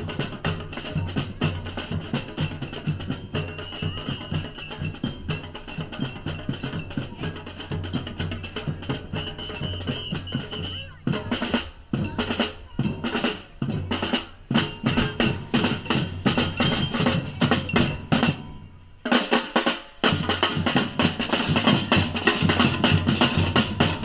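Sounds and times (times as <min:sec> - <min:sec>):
samba percussion ensemble drumming: 0:00.0 - 0:24.0.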